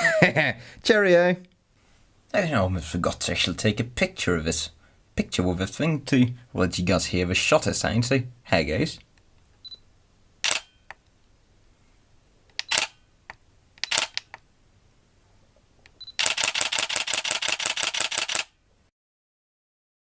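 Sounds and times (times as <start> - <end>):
autofocus beep: 9.6 - 9.8, 12.7 - 12.9, 16.0 - 16.3
camera burst shooting clicks: 10.4 - 11.0, 12.5 - 13.0, 13.8 - 14.4, 16.2 - 18.6
camera shutter clicks: 10.4 - 11.0, 12.5 - 13.0, 13.8 - 14.4, 16.2 - 18.6.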